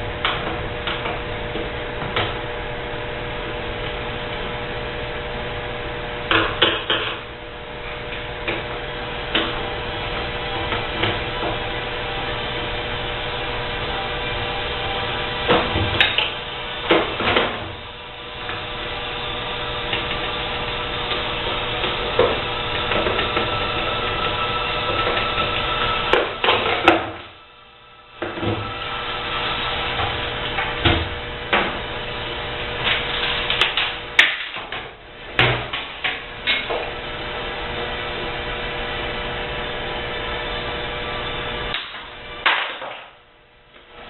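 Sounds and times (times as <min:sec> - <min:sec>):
steady hum: 0:00.0 - 0:44.0
knocks and clatter of dishwasher parts: 0:34.2 - 0:36.8.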